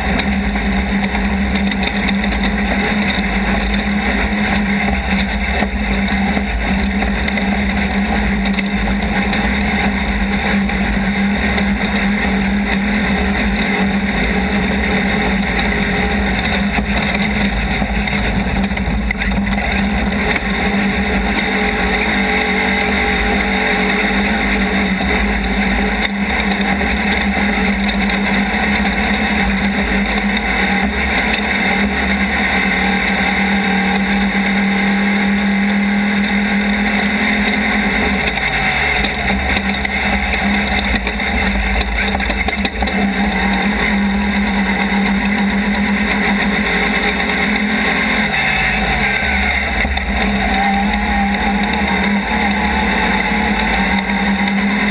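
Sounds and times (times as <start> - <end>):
race vehicle engine running hard: 0.0 - 54.9
rough low rumble: 36.1 - 54.9.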